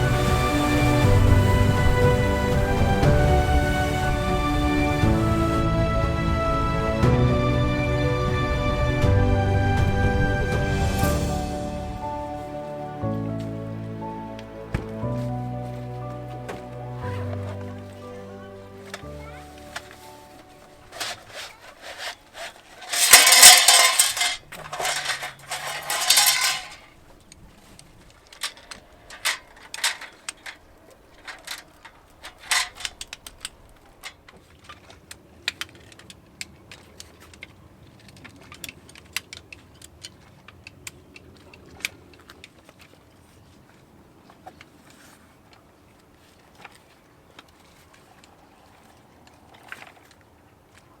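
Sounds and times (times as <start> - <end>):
light clicks and knocks of handling: 18.9 - 43.0
scraping and rubbing: 19.0 - 26.9, 28.4 - 30.6, 31.2 - 33.0.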